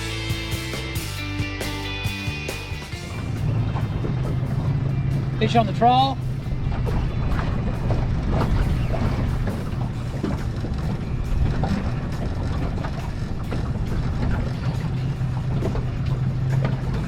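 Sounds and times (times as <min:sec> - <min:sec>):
outboard motor running: 0:00.0 - 0:17.0
wind on microphone: 0:06.2 - 0:17.0.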